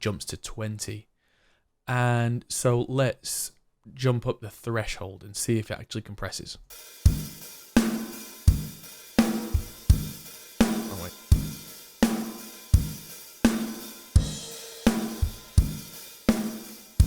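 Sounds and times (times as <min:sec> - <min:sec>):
drum kit playing steady beat: 0:06.7 - 0:17.0.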